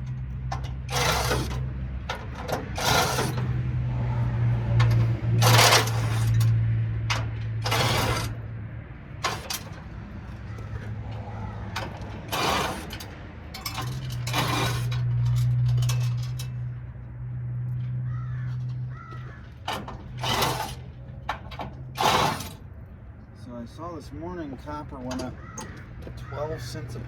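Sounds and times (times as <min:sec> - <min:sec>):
metal parts clinking: 0:00.0 - 0:03.5, 0:04.7 - 0:08.4, 0:09.2 - 0:16.7, 0:18.6 - 0:22.6
power tool motor running: 0:00.8 - 0:01.8, 0:02.6 - 0:06.5, 0:07.6 - 0:08.4, 0:11.8 - 0:15.0, 0:20.1 - 0:20.9, 0:21.9 - 0:22.6.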